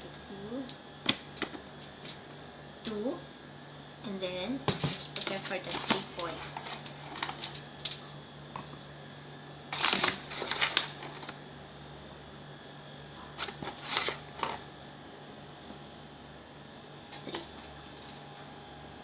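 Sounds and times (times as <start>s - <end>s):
steady low hum: 0.0s - 19.0s
flour rustling and scraping: 13.4s - 14.6s.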